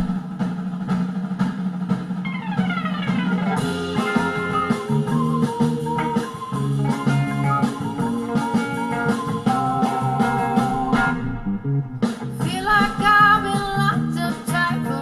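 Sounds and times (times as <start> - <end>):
falling sweep: 2.8 - 15.0
pop music through speaker: 3.6 - 15.0.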